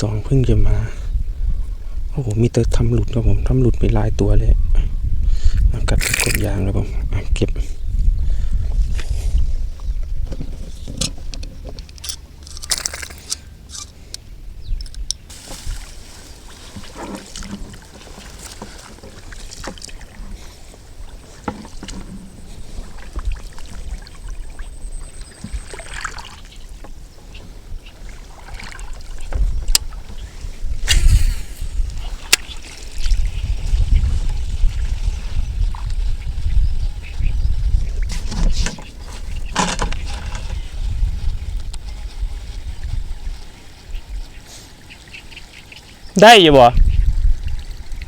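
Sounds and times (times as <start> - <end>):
wind buffeting microphone: 0.0 - 25.8, 26.5 - 44.5, 46.4 - 48.0
water sloshing and splashing: 15.3 - 36.0.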